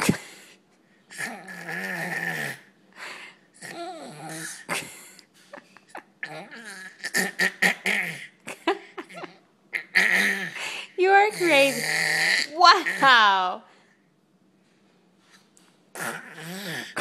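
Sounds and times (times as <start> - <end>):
baby fake coughing: 6.9 - 8.3.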